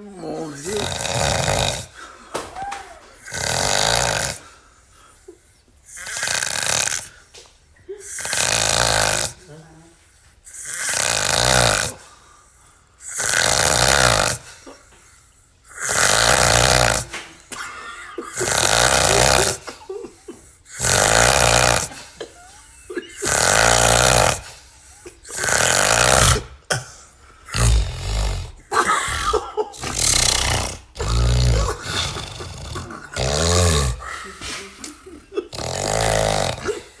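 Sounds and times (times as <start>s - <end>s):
man snoring loudly: 0.0s - 2.0s, 3.2s - 4.5s, 5.9s - 7.1s, 8.1s - 9.4s, 10.5s - 12.1s, 13.0s - 14.5s, 15.7s - 17.2s, 18.3s - 19.8s, 20.7s - 22.1s, 23.2s - 24.6s, 25.3s - 26.7s, 27.5s - 34.2s, 35.4s - 37.0s.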